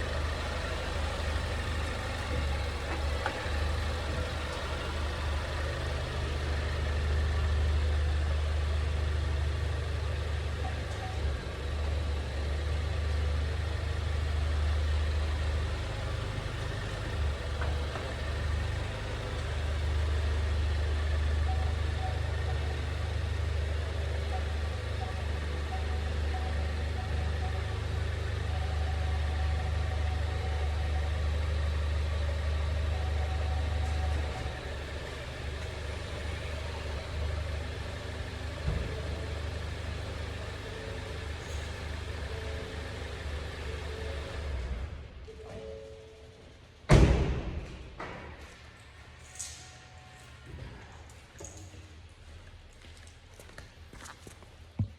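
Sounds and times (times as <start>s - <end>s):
car cabin road noise: 0.0s - 45.2s.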